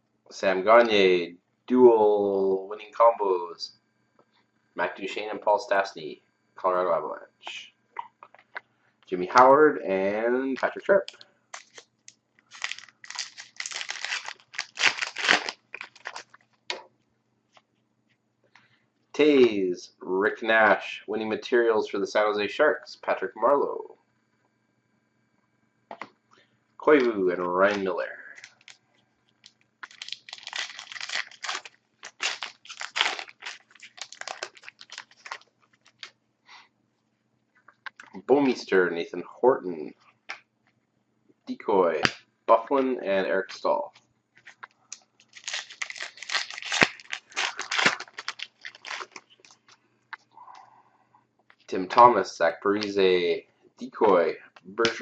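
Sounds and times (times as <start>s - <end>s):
wrapper tearing and crinkling: 10.6s - 11.8s, 12.5s - 16.6s, 27.7s - 28.8s, 29.4s - 36.1s, 45.2s - 49.8s.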